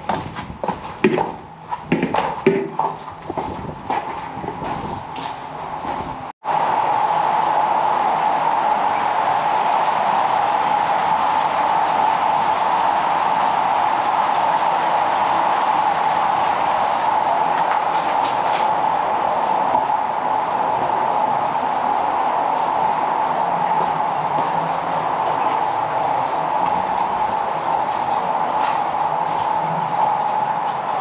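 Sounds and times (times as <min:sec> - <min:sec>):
underground stream rushing: 0:06.4 - 0:31.0.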